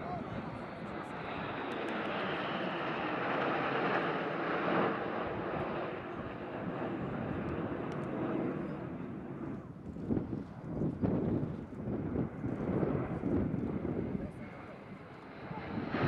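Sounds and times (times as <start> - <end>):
jets flying past: 0.0 - 9.5, 13.8 - 16.0.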